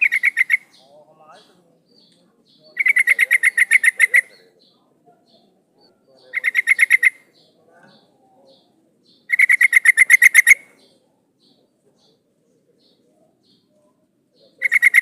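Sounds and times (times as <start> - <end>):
bird chattering call: 0.0 - 4.8, 5.4 - 11.6, 14.4 - 15.0.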